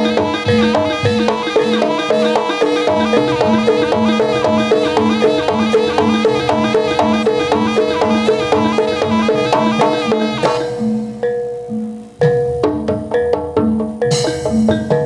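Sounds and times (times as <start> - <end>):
gamelan ensemble music: 0.0 - 15.0
low repeating tone: 0.8 - 12.4.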